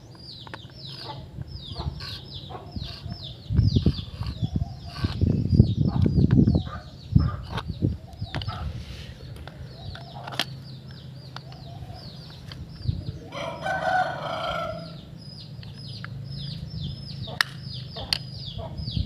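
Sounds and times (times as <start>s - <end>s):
chicks chirping: 0.0s - 8.8s, 9.6s - 19.0s
rooster crowing: 13.3s - 15.0s.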